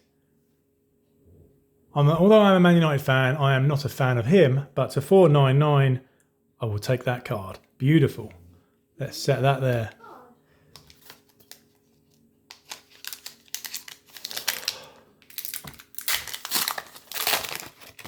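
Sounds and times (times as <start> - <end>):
plastic wrapper crinkling: 10.7 - 18.0.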